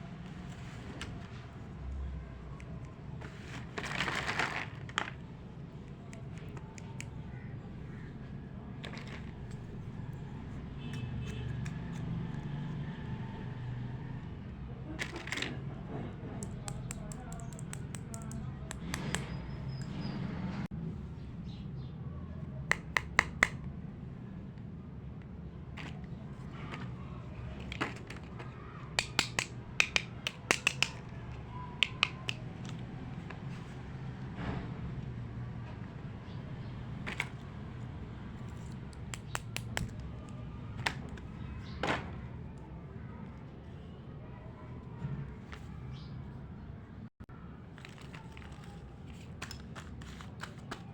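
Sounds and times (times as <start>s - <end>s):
plastic toy pieces clicking: 16.4s - 19.2s, 29.0s - 32.8s.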